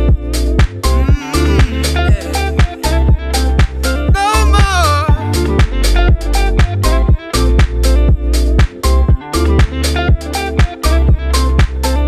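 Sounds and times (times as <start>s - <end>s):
dance music with heavy bass: 0.8s - 6.7s.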